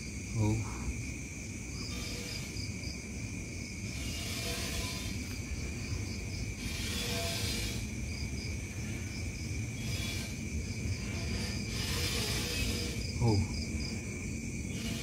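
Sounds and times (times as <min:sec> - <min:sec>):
crickets trilling: 0:00.0 - 0:15.0
harsh hiss: 0:03.7 - 0:15.0.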